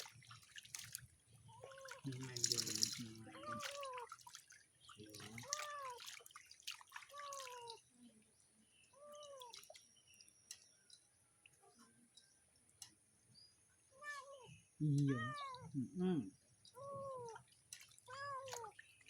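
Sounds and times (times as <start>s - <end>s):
water dripping and splashing: 0.0s - 7.9s, 9.1s - 13.0s, 16.6s - 19.0s
cat meowing: 3.4s - 4.1s, 5.4s - 6.1s, 7.1s - 7.8s, 14.0s - 15.7s, 16.8s - 17.4s, 18.1s - 18.8s.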